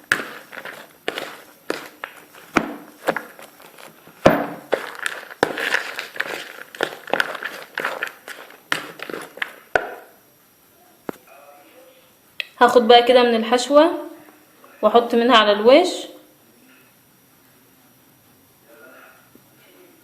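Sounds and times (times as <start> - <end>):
spoon knocking and scraping bowl: 0.0 - 10.1.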